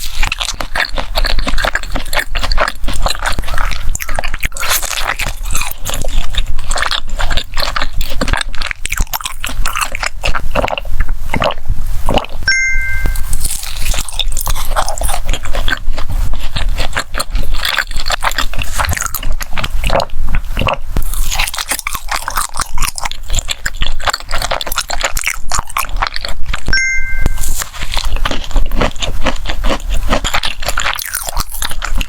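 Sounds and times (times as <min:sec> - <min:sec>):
crunching and chewing food: 0:00.0 - 0:32.0
high two-note tone: 0:12.5 - 0:13.4, 0:26.7 - 0:27.5.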